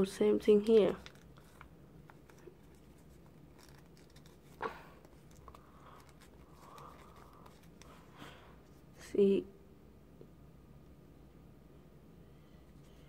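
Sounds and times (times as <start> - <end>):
paper rustling and crackling: 0.6 - 8.2.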